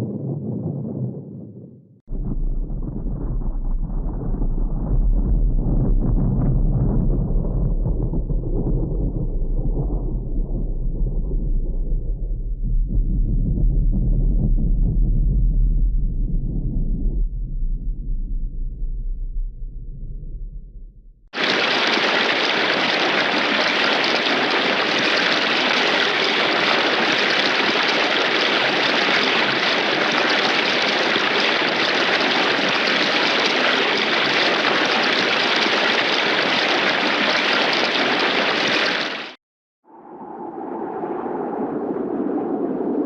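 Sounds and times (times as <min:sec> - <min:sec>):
low rumble: 0:00.0 - 0:21.3, 0:39.9 - 0:43.0
heavy rain: 0:21.4 - 0:39.4.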